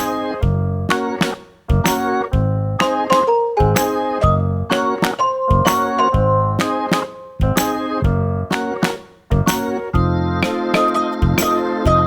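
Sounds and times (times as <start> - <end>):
keyboard chords: 0.0 - 12.0.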